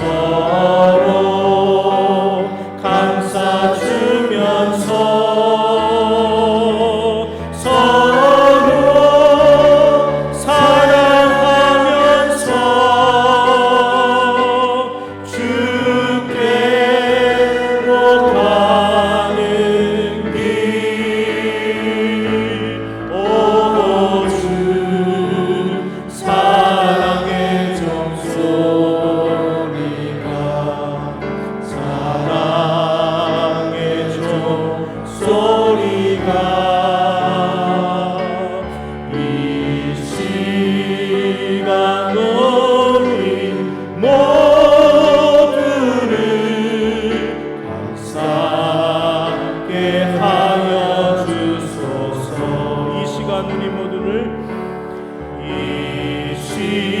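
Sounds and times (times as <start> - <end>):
choir singing a hymn: 0.0 - 57.0
steady accompaniment: 0.0 - 57.0.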